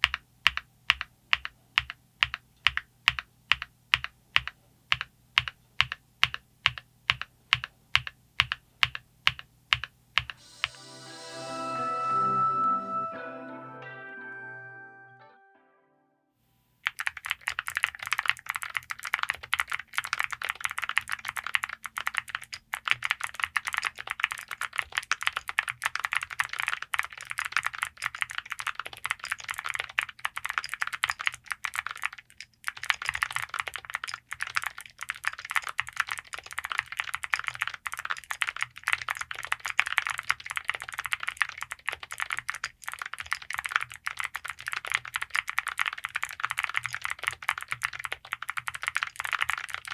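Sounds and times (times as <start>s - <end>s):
fast typing on mechanical keyboard: 0.0s - 10.4s, 16.8s - 49.9s.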